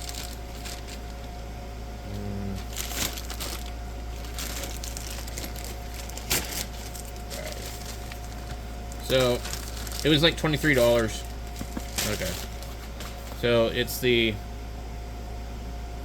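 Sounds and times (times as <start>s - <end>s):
steady electrical hum: 0.0s - 16.0s
faint crinkling: 2.6s - 13.4s.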